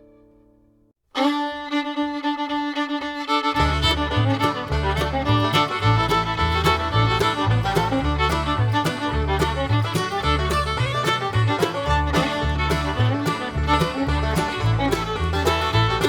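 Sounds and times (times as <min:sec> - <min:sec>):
fiddle string tune: 0:01.1 - 0:16.0
steady bass line: 0:03.6 - 0:16.0.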